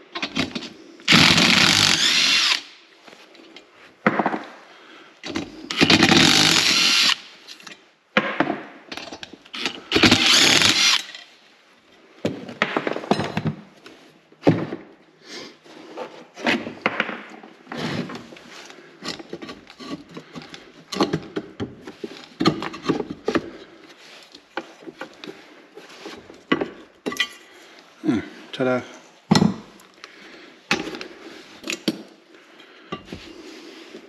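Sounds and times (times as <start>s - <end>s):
handheld power tool spinning: 1.1s - 2.8s, 5.7s - 7.3s, 9.5s - 11.3s.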